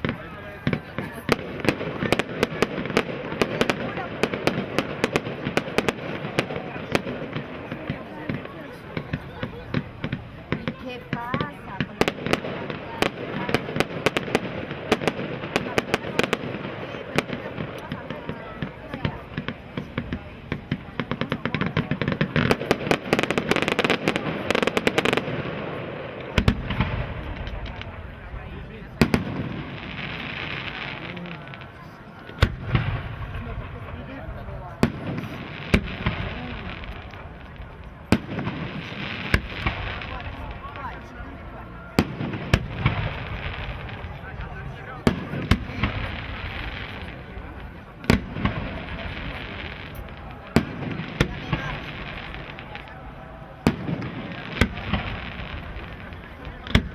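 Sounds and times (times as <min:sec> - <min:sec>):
fireworks crackling: 0:00.0 - 0:56.9
steady background noise: 0:00.0 - 0:56.9
deep firework boom: 0:19.1 - 0:31.1, 0:32.4 - 0:40.8.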